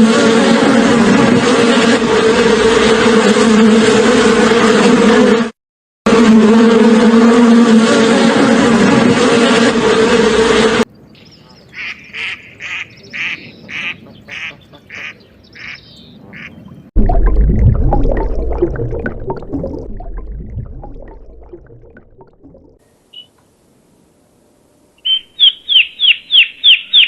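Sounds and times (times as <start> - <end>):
waterfowl calling: 11.4 - 16.7
low noisy rumble: 17.0 - 22.8.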